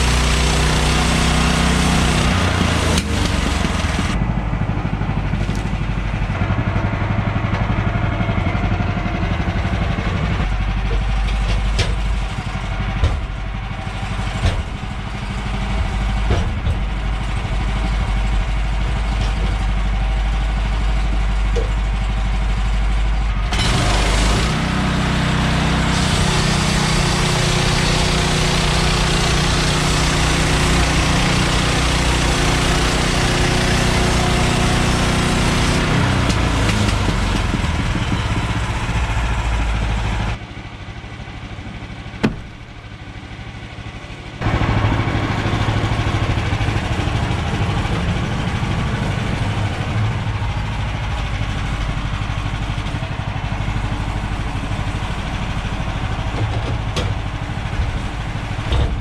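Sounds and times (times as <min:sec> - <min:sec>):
sawmill engine running: 0:00.0 - 0:59.0
sharp knocks: 0:42.2 - 0:42.6.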